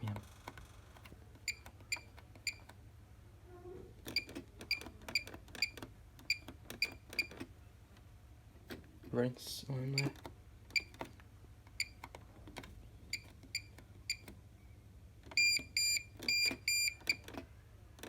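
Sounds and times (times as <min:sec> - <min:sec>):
washing machine panel beeping: 0:01.5 - 0:02.7, 0:04.2 - 0:07.4, 0:15.4 - 0:17.2.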